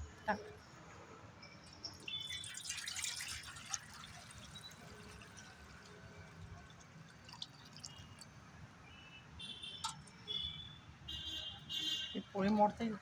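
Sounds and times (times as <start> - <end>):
water splashing in a bowl: 2.0 - 8.4.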